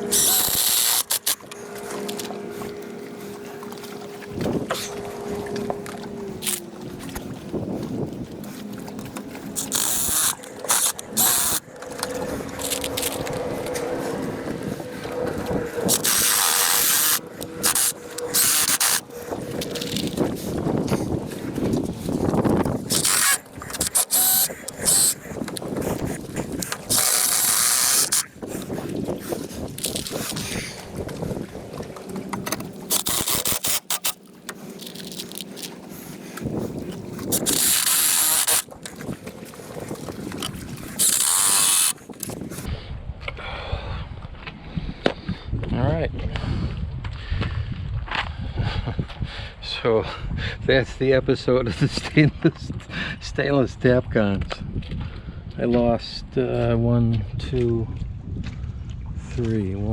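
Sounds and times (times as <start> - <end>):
cordless power driver running: 0.0 - 7.3, 8.7 - 20.9, 22.2 - 28.8, 32.1 - 38.7, 40.3 - 42.7.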